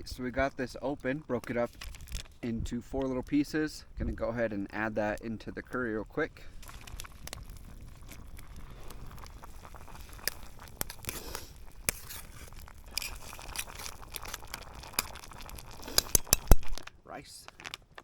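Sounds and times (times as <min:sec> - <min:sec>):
sharp clicks and snaps: 0:01.4 - 0:02.4, 0:06.6 - 0:18.0
plastic packaging crinkling: 0:01.7 - 0:02.4, 0:06.5 - 0:18.0.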